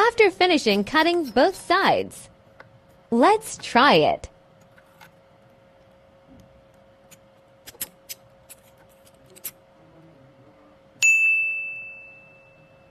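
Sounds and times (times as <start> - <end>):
bright metallic ding: 11.0 - 12.9.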